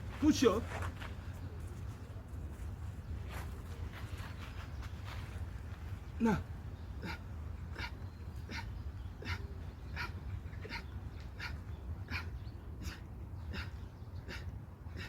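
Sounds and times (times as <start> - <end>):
man panting: 6.9 - 15.0.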